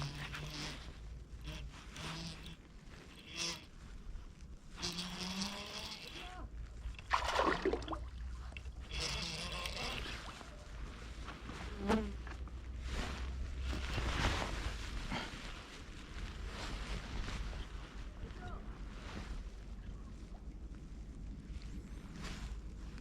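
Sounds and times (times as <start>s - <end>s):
flying insect buzzing: 0.0s - 3.8s, 4.7s - 6.4s, 8.8s - 10.7s, 11.6s - 12.4s
low wind rumble: 10.0s - 23.0s.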